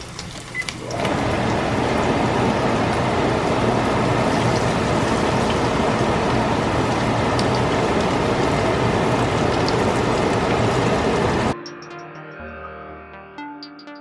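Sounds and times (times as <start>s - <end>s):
chicken sizzling in oil: 0.0s - 11.6s.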